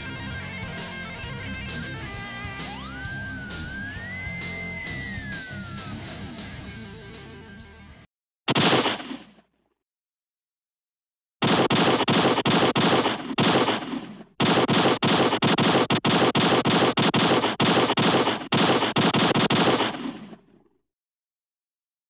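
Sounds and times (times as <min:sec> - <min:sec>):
machine-gun fire: 0:08.5 - 0:09.4, 0:11.4 - 0:20.5.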